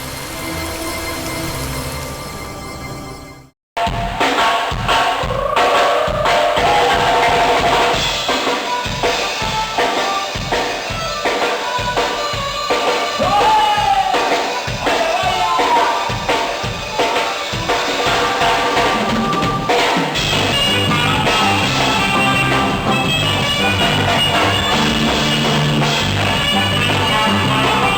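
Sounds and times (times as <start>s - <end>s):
band music with drum beat: 3.8s - 27.9s
pulsing bass line: 20.2s - 27.9s.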